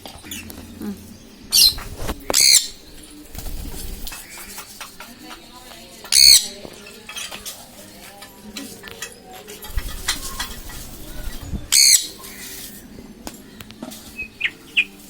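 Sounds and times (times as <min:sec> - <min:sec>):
lovebirds calling: 0:00.0 - 0:15.0.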